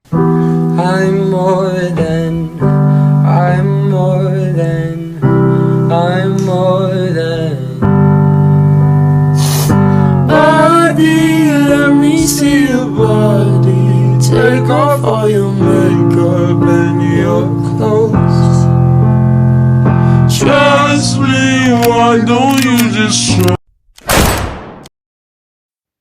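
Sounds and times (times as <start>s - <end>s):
person singing: 0.1s - 8.7s, 9.3s - 18.9s, 19.8s - 23.6s
keyboard chords: 0.1s - 23.6s.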